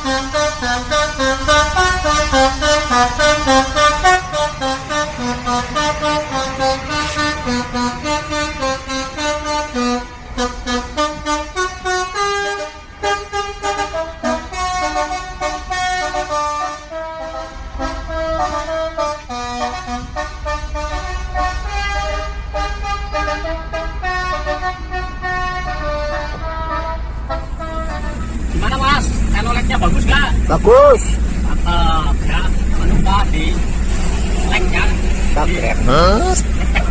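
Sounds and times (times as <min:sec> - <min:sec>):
musical air horn melody: 0:00.0 - 0:28.8
truck engine rumbling: 0:00.0 - 0:36.9.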